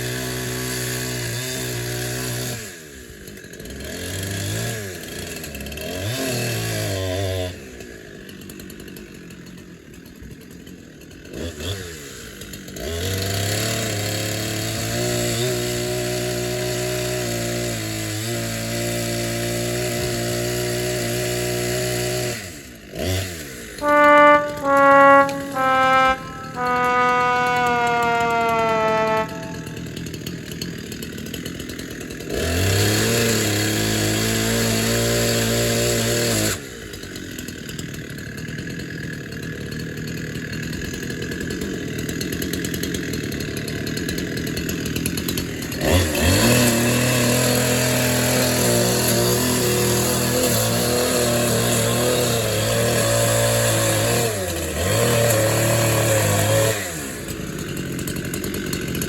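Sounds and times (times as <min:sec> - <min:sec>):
sad trombone sound effect: 0:23.8 - 0:29.9.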